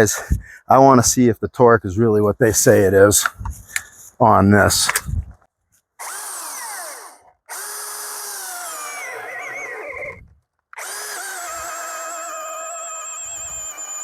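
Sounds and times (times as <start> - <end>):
battery chainsaw cutting log: 6.0 - 14.0.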